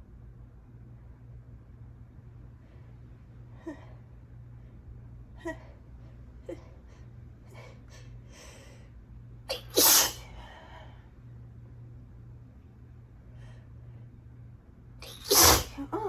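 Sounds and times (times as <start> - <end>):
person sneezing: 9.5 - 10.2, 15.0 - 16.0.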